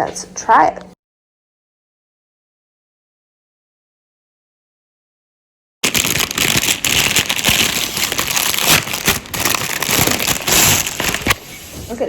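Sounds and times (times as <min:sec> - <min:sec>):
plastic packaging crinkling: 0:05.8 - 0:11.5.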